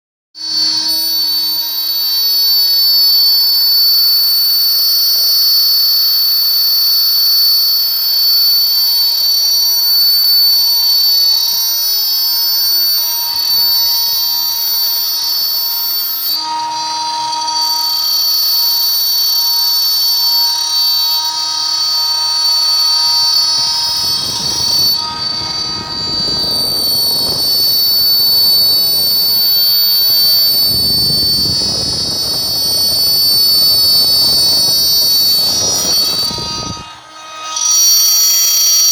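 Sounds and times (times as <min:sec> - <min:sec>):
motors whining: 0:13.3 - 0:38.9.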